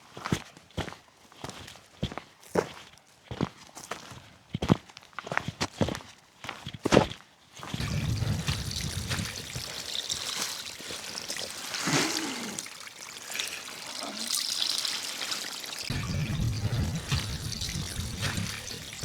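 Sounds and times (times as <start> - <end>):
stream water trickling: 7.8 - 19.0
footsteps: 15.9 - 19.0.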